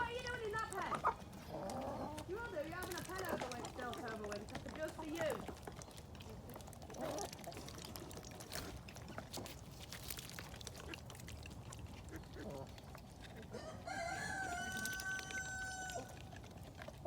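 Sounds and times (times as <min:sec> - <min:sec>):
rooster crowing: 0:13.5 - 0:16.2.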